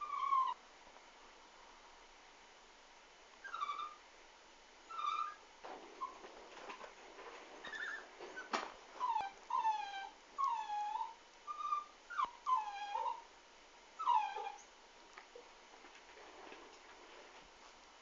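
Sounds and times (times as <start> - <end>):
pet whining: 0.0 - 0.6, 3.4 - 4.0, 4.9 - 13.3, 14.0 - 14.8.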